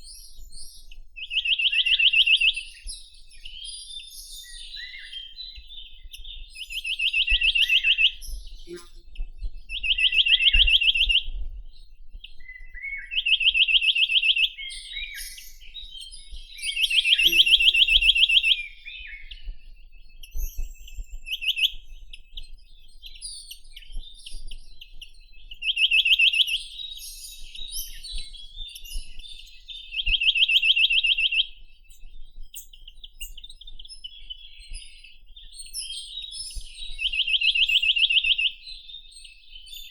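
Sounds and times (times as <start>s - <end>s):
bird singing fast trill: 12.4s - 22.3s
faint high chirps: 16.7s - 18.8s.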